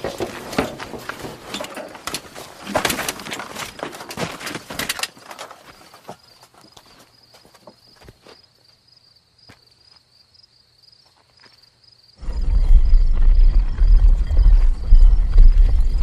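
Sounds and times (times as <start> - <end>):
clattering knocks and cracks: 0.0 - 5.8.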